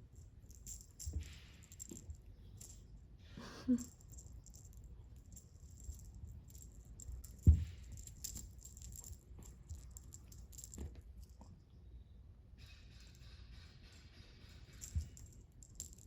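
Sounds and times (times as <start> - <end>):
light rattling: 0.0 - 3.0, 3.8 - 11.5, 14.4 - 16.0
dull thump: 7.2 - 8.0.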